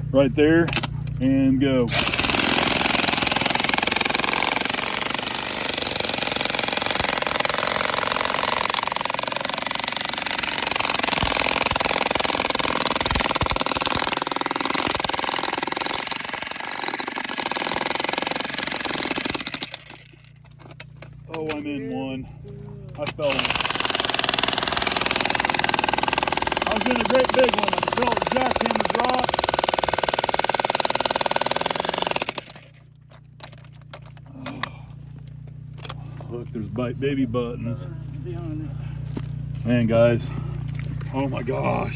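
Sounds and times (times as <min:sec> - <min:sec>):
jackhammers rattling: 0:00.0 - 0:41.9
steady low hum: 0:32.7 - 0:41.9.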